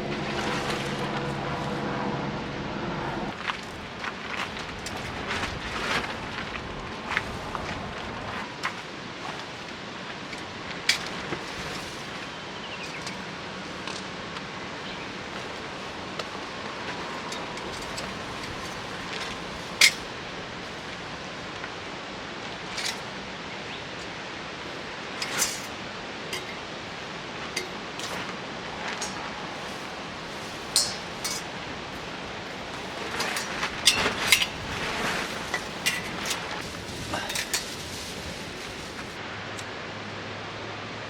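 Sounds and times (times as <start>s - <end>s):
steady background hiss: 8.4s - 41.0s.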